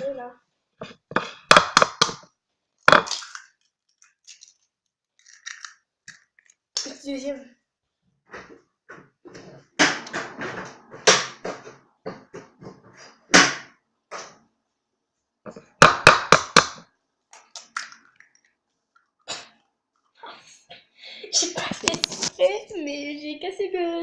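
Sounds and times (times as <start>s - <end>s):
eggshell clatter: 2.9s - 6.6s.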